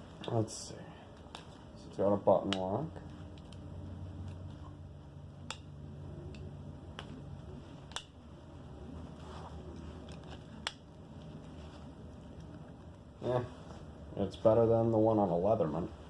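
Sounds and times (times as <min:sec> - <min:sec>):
handling rustle: 0:06.9 - 0:16.0.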